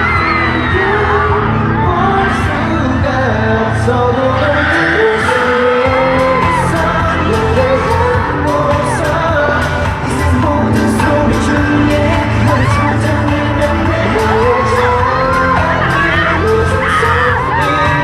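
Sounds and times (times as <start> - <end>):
person singing: 0.0 - 18.0
steady music beat: 5.8 - 18.0.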